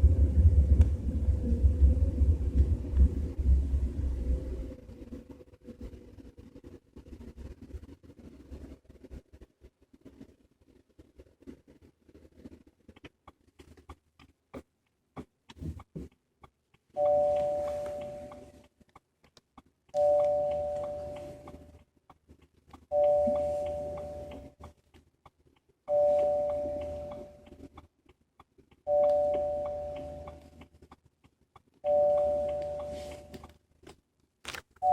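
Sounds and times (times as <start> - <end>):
car warning chime: 16.9 - 18.6, 20.0 - 21.8, 22.9 - 24.7, 25.9 - 27.7, 28.9 - 30.6, 31.8 - 33.5.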